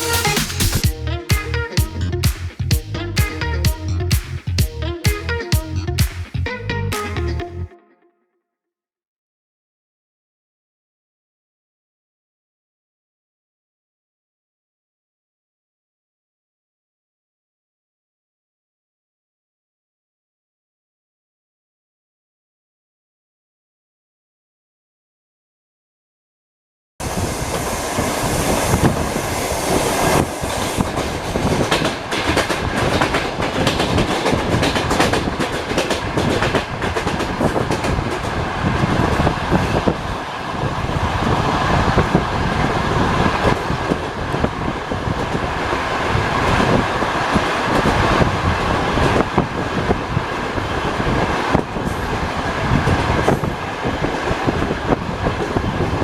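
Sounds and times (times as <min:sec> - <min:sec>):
train wheels rumbling on rails: 0:27.0 - 0:56.0
wheels clattering over rail joints: 0:30.8 - 0:38.4.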